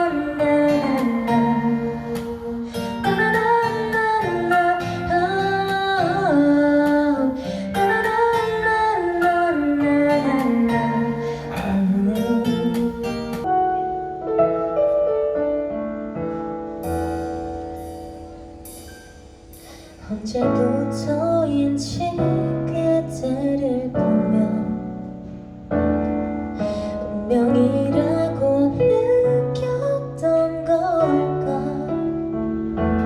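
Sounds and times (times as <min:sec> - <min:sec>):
person singing wordless vocals: 0:00.0 - 0:13.4
guitar accompaniment: 0:00.0 - 0:33.0.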